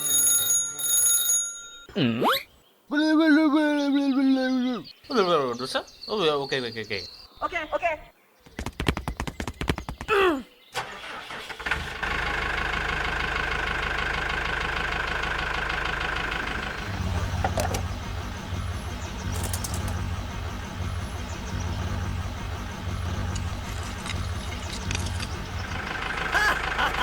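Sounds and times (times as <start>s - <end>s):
low pulsing drone: 16.2s - 27.0s
motor whine: 16.2s - 27.0s
clicks: 19.3s - 20.1s.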